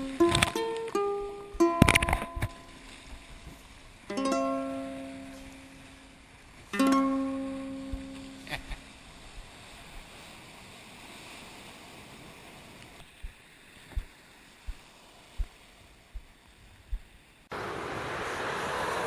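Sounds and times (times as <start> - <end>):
ocean surf washing on beach: 0.0 - 19.0
wind thumps on microphone: 12.9 - 17.2.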